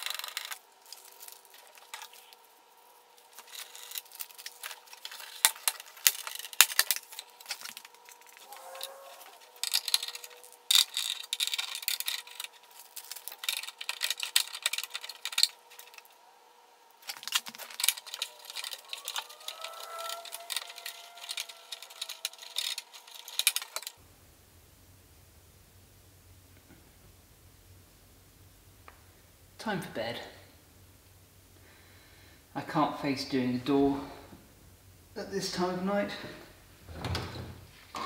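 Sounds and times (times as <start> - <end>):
rustling: 0.0 - 24.0.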